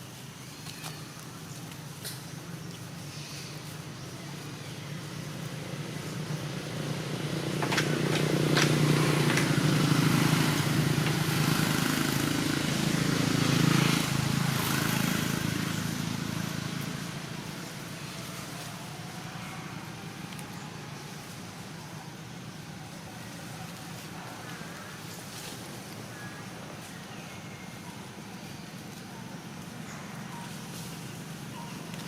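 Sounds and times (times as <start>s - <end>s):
vehicle engine passing by: 4.7s - 27.1s.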